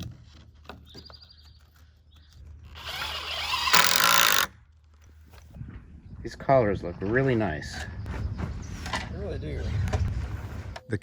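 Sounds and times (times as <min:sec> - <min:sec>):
power tool spinning up: 0:02.7 - 0:04.5.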